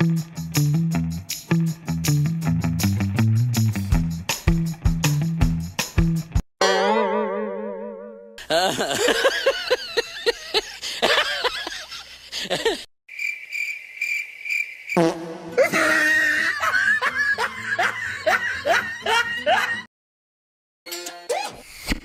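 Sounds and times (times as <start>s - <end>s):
cartoonish high-pitched giggling: 8.4s - 12.9s.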